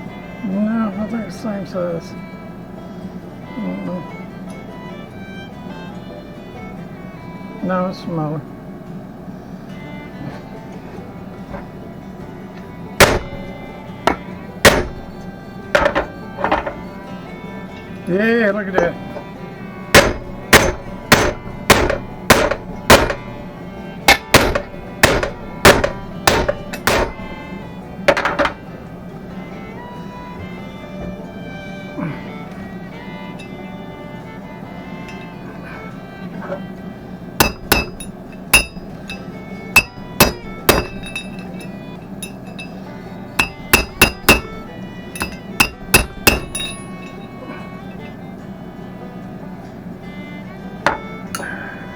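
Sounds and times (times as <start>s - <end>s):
hammer striking steel: 11.4s - 11.8s, 13.0s - 17.0s, 18.8s - 28.7s, 35.0s - 35.7s, 37.4s - 47.3s, 50.9s - 51.7s.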